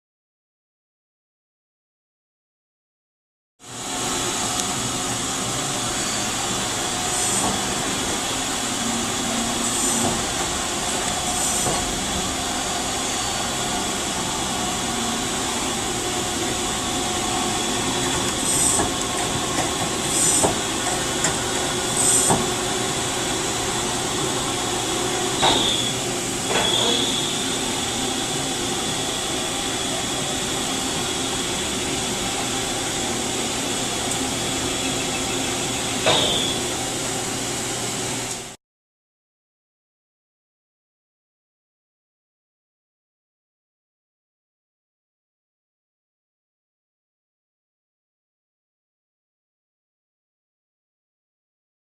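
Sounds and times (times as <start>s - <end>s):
lathe humming and whining: 3.6s - 38.6s.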